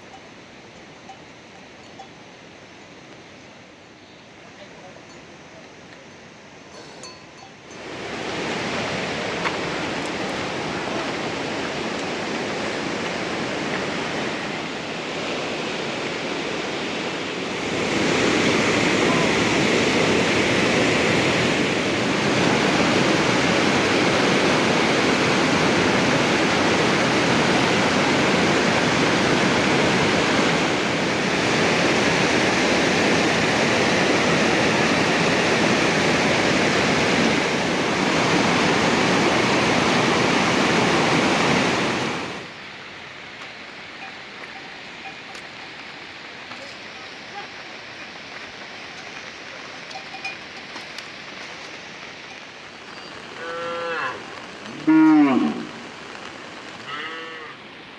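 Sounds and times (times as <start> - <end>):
heavy rain falling: 7.8 - 43.8, 45.7 - 57.9.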